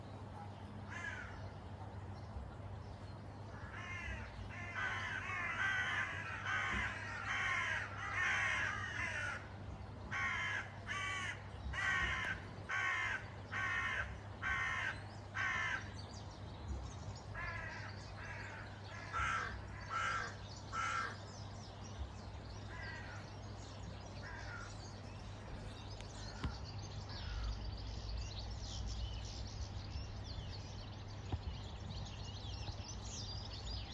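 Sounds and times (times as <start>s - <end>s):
crows cawing: 0.9s - 1.4s, 3.5s - 9.5s, 10.1s - 15.9s, 17.4s - 21.2s, 22.7s - 23.3s, 24.2s - 24.8s, 26.2s - 27.6s.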